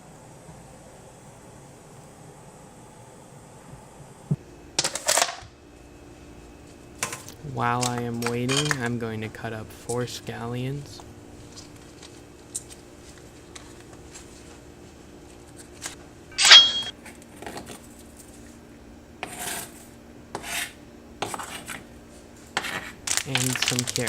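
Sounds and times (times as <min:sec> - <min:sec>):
steady low hum: 0:00.0 - 0:04.8, 0:05.5 - 0:17.1
kitchen utensils clicking: 0:16.4 - 0:16.9
ringing metallic clink: 0:16.4 - 0:16.9.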